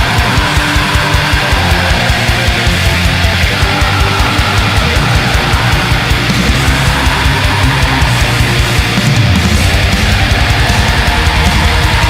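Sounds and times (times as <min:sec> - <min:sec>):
distorted electric guitars: 0:00.0 - 0:12.0
fast drumming: 0:00.0 - 0:12.0.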